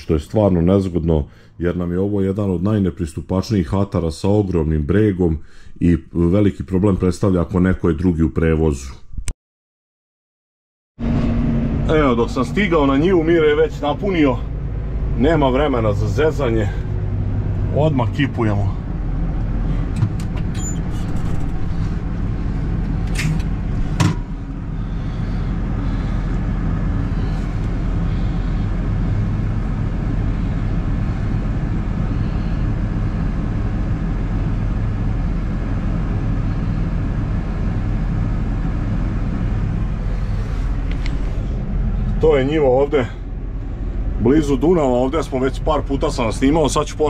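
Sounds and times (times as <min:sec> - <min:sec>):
diesel engine running: 0:11.0 - 0:47.0.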